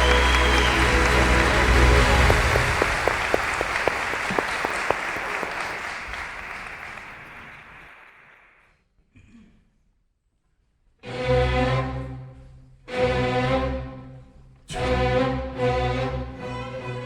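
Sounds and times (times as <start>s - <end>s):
audience applauding: 0.0s - 8.6s.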